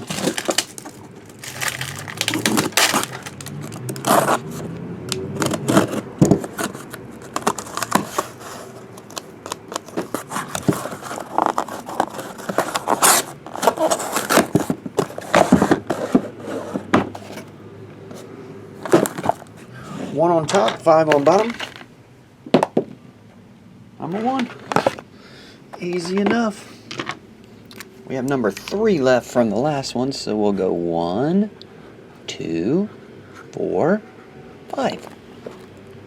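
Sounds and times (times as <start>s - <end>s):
packaging crinkling: 0.0s - 16.2s, 18.8s - 19.5s
cardboard scraping and tearing: 0.0s - 17.5s, 18.1s - 21.8s
knocks of boxes being handled: 5.4s - 8.4s, 9.7s - 17.5s, 18.8s - 19.5s, 22.5s - 23.0s.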